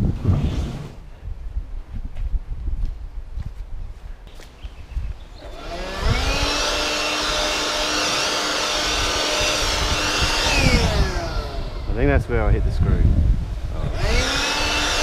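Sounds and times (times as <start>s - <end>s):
chainsaw revving: 5.4s - 12.1s, 13.8s - 15.0s.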